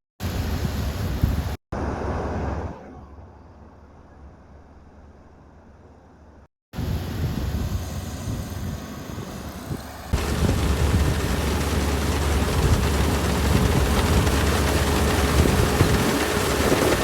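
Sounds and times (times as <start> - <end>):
harvester engine rumble: 7.8 - 17.0.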